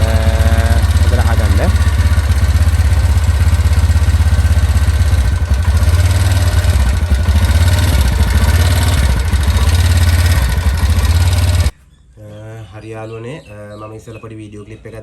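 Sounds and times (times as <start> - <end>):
fast engine ticking: 0.0 - 11.7
scooter engine idling: 0.0 - 11.7.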